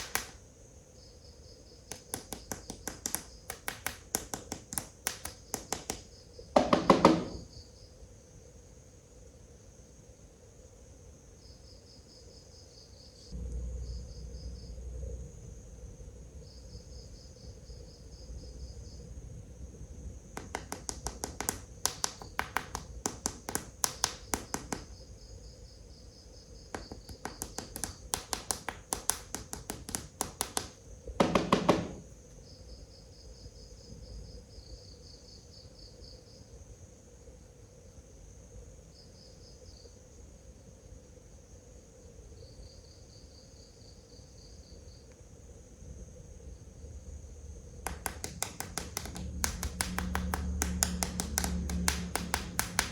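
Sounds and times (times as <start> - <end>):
rapid loud clicking: 0.0 - 0.4, 1.9 - 7.2, 20.4 - 25.0, 26.8 - 32.0, 47.8 - 52.9
crickets chirping: 0.0 - 52.9.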